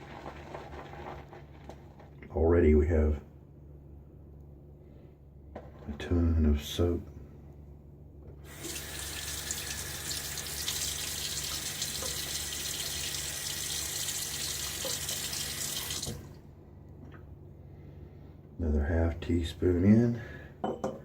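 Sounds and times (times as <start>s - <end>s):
water tap running: 8.4s - 16.4s.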